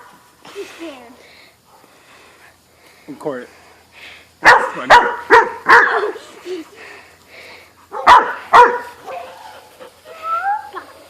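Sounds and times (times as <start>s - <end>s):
dog barking: 4.4s - 6.2s, 7.9s - 9.7s.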